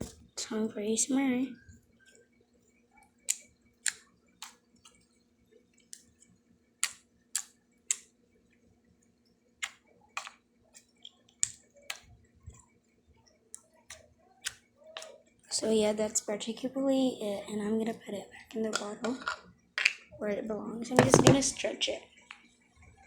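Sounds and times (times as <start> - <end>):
slime clicking and popping: 6.8 - 8.1, 9.6 - 10.4.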